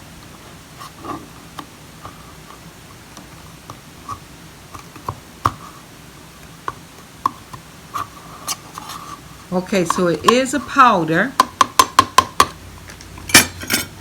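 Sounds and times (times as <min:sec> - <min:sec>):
utensil tapping in grinder cup: 0:09.6 - 0:12.6.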